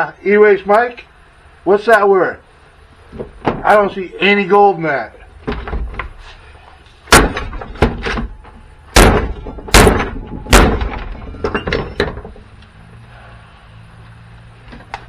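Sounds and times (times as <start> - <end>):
sharp knocks and clatters: 3.1 - 3.7, 5.4 - 6.4, 7.1 - 12.6.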